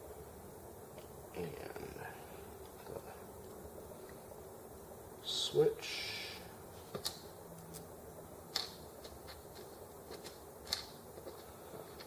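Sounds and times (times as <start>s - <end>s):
small parts clicking and tapping: 8.5s - 12.0s.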